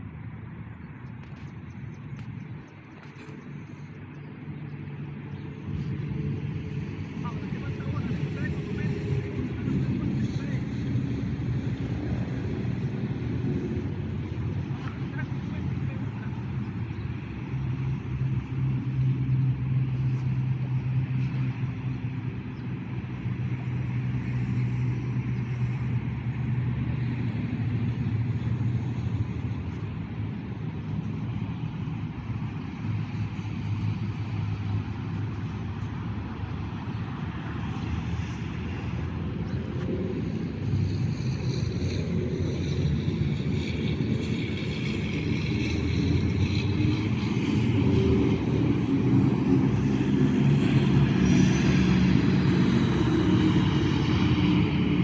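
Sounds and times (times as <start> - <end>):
vehicle engine humming: 0.0 - 55.0.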